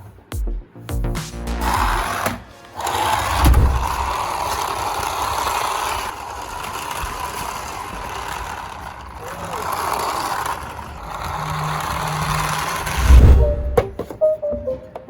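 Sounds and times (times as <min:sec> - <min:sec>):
toy car whirring: 0:01.6 - 0:13.6.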